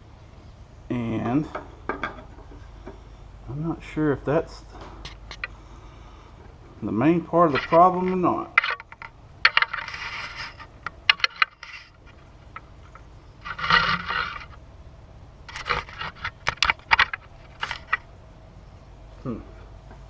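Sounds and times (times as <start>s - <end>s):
insert scraping: 7.4s - 14.6s, 15.5s - 18.1s.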